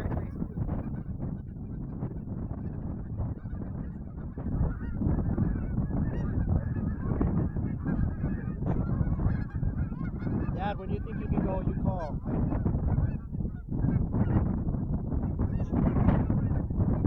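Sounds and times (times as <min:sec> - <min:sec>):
wind buffeting microphone: 0:00.0 - 0:17.0
geese honking: 0:07.8 - 0:12.2.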